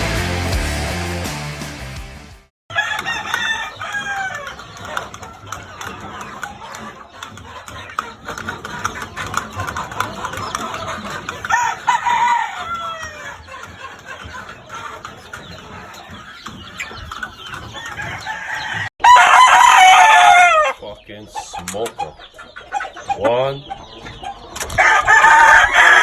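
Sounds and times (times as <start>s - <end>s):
rock music: 0.0s - 2.5s
roosters crowing: 2.7s - 20.8s, 24.7s - 26.0s
chickens clucking: 2.7s - 26.0s.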